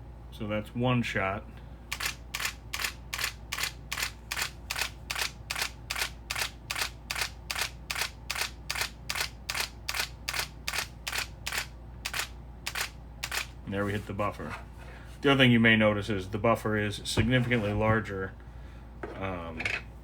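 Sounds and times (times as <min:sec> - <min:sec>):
camera shutter burst clicks: 0:01.9 - 0:13.5.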